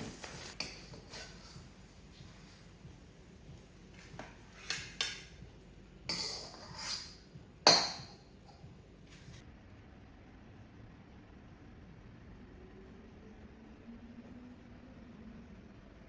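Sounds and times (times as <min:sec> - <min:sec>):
utensils scraping pots: 0:06.1 - 0:08.1
utensils clinking on dishes: 0:06.1 - 0:08.7.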